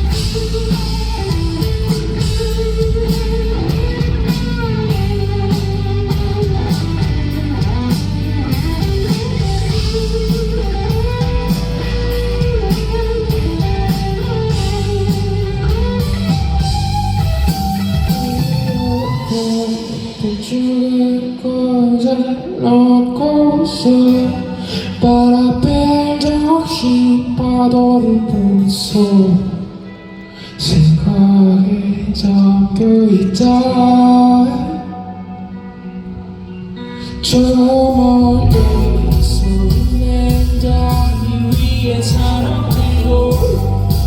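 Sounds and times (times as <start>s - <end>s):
bass: 0.0s - 19.6s, 35.2s - 44.0s
drums and cymbals: 0.0s - 20.9s, 37.3s - 44.0s
electric guitar melody: 0.0s - 44.0s
person singing: 0.0s - 44.0s.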